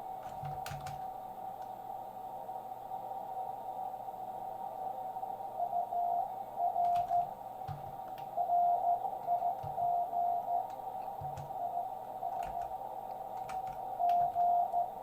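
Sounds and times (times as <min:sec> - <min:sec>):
receiver hiss: 0:00.0 - 0:15.0
morse code tone: 0:05.6 - 0:07.3, 0:08.3 - 0:12.7, 0:13.5 - 0:15.0.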